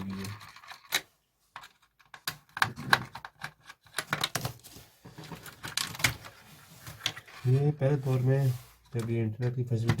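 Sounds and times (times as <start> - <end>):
plastic and metal parts clicking: 0.0 - 4.5, 5.2 - 6.3.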